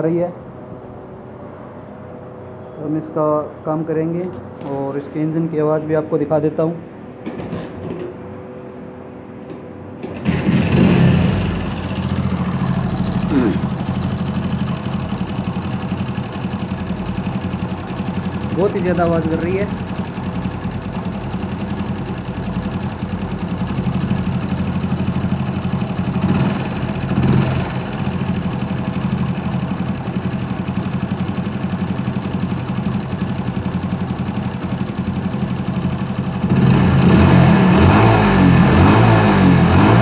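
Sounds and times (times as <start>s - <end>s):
motorcycle engine idling and revving: 10.0s - 40.0s.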